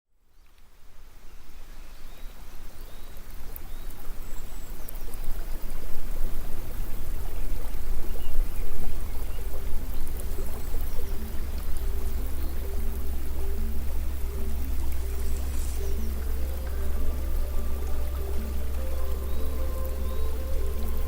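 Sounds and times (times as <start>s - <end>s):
waterfall rushing: 9.5s - 21.0s.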